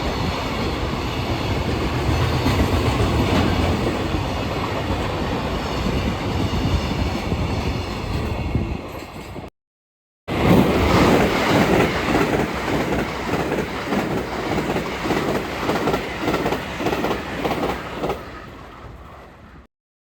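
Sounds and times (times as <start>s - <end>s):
train wheels clacking on rails: 0.0s - 9.5s, 10.3s - 19.3s.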